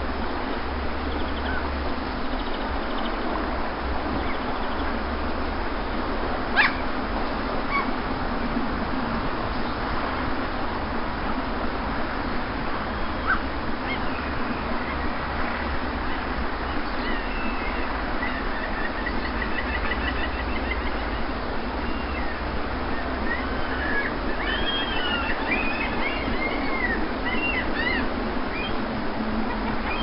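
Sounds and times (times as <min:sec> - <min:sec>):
sea surf on beach: 0:00.0 - 0:30.0
small birds chirping: 0:00.4 - 0:03.3, 0:04.1 - 0:05.0, 0:13.0 - 0:28.8.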